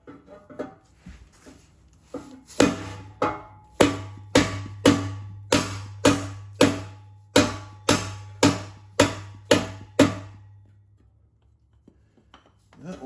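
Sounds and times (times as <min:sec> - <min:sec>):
mallet striking wood block: 0:02.6 - 0:10.4.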